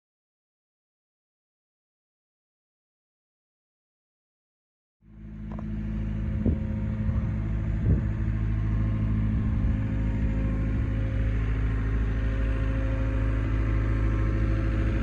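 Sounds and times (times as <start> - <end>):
diesel engine running: 5.0 - 15.0.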